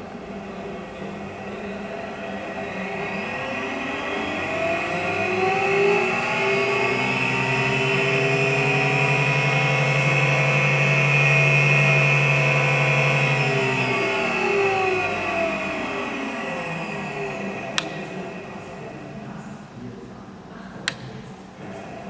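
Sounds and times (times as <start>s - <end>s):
drill press motor whine: 0.0s - 22.0s.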